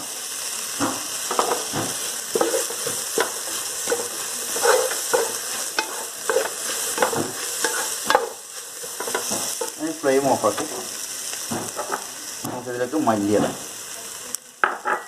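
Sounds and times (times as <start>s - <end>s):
meat sizzling in a pan: 0.0s - 15.0s
spatula scraping a pan: 1.2s - 10.9s.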